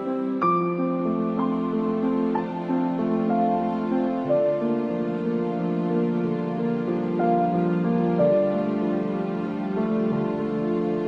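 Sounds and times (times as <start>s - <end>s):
slow soft melodic music: 0.0s - 11.0s.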